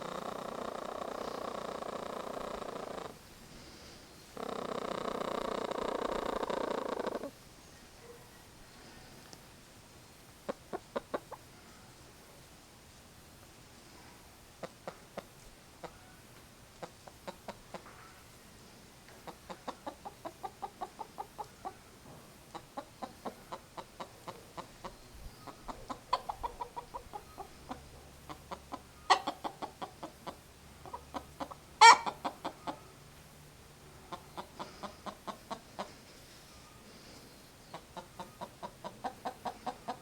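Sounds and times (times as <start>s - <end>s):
hen clucking: 0.0s - 3.2s, 4.4s - 7.4s, 10.4s - 11.5s, 14.6s - 18.1s, 19.1s - 33.0s, 33.8s - 36.1s, 37.6s - 40.0s
sharp hen calls: 4.4s - 7.4s, 22.6s - 32.9s.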